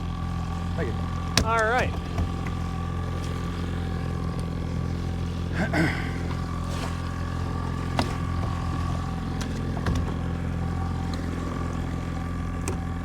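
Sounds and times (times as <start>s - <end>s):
boat engine running: 0.0s - 13.0s
light knocks on boat: 1.3s - 2.7s, 7.9s - 10.3s, 12.6s - 13.0s.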